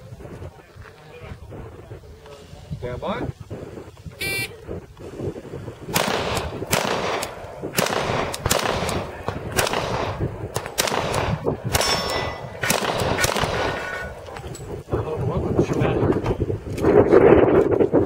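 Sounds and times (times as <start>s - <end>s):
short beep: 4.2s - 4.6s
pistol shots: 5.9s - 14.2s.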